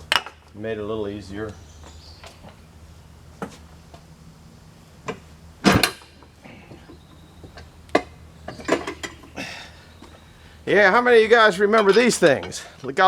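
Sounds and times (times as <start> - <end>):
metal clanks on steel rim: 7.5 - 9.4, 11.7 - 12.7.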